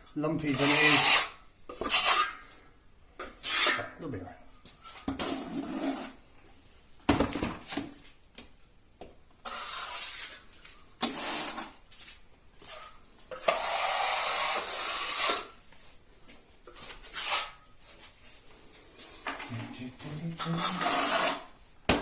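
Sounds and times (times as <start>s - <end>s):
trowel scraping joint compound: 0.4s - 2.5s, 3.2s - 3.9s, 4.8s - 6.2s, 9.4s - 15.6s, 16.7s - 18.1s, 20.3s - 21.6s.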